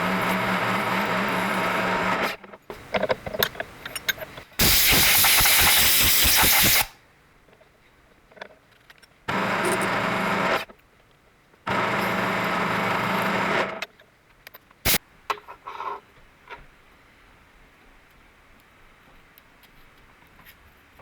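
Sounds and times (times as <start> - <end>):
compressed air blow gun bursts: 4.6 - 7.0.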